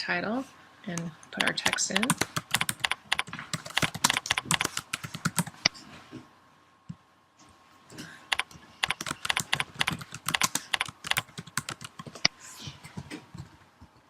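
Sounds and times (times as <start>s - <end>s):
typing on computer keyboard: 1.4s - 5.7s, 8.3s - 12.3s.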